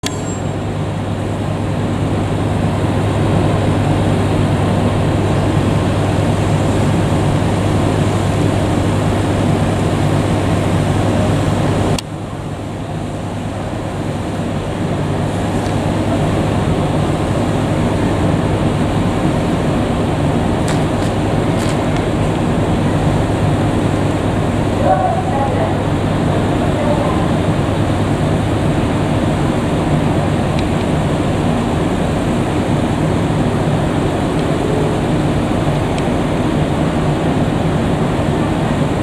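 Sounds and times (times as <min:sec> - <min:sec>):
diesel railcar engine drone: 0:00.0 - 0:39.0.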